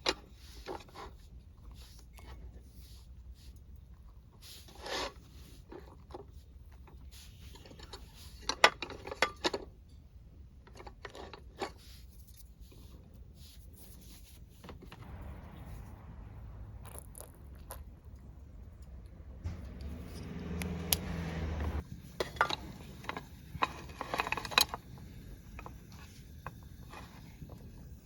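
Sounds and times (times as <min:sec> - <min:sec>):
low steady rumble: 0:14.3 - 0:26.6
cooking gear knocking and scraping: 0:16.7 - 0:28.0.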